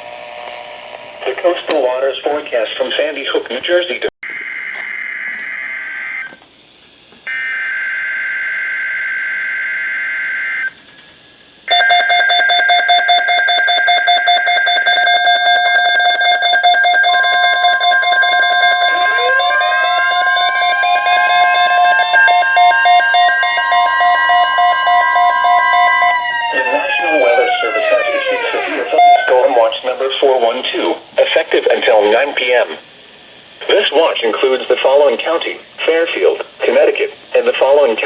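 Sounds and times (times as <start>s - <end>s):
harsh pulsing electronic alert tone: 11.7s - 30.0s
steady tone: 16.3s - 30.2s
two-note data screech bursts: 28.9s - 29.5s.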